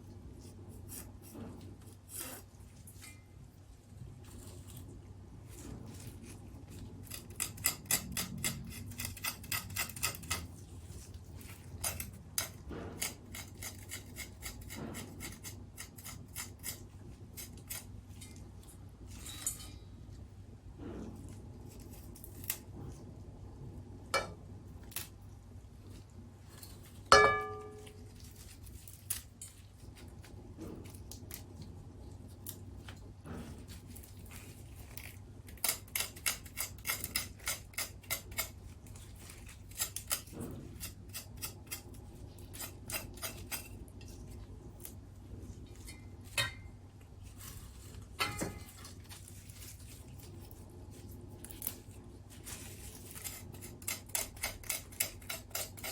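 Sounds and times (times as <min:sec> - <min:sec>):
utensils and dishes handled: 0:19.1 - 0:20.1, 0:45.7 - 0:55.9.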